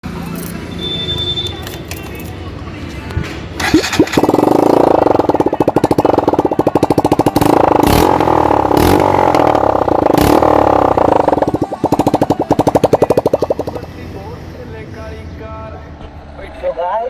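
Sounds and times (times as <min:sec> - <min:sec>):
motorcycle engine running: 0:03.6 - 0:14.3.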